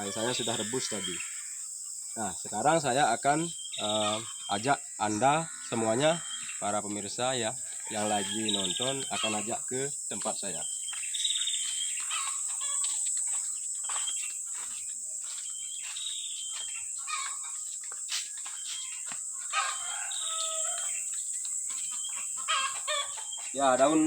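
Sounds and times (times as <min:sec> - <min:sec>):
rooster crowing: 0:00.0 - 0:01.6, 0:03.8 - 0:09.7, 0:18.9 - 0:21.2, 0:21.8 - 0:24.0
bird chirps: 0:00.0 - 0:07.2, 0:07.8 - 0:24.0
high insect drone: 0:00.0 - 0:24.0.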